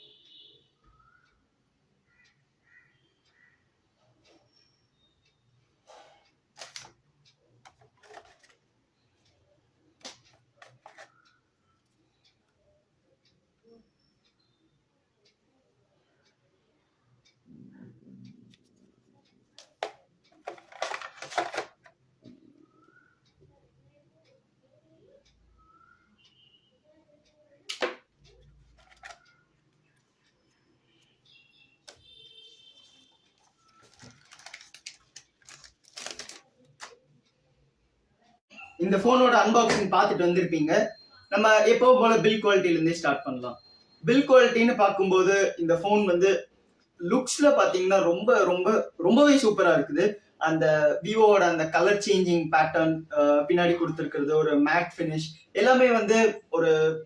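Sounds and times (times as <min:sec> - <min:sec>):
packaging rustling: 0:06.6 - 0:06.9, 0:07.7 - 0:08.6, 0:20.4 - 0:21.9, 0:33.4 - 0:37.0
clicks and taps of handling: 0:06.6 - 0:12.6, 0:19.4 - 0:22.5, 0:27.6 - 0:30.2, 0:32.9 - 0:37.2.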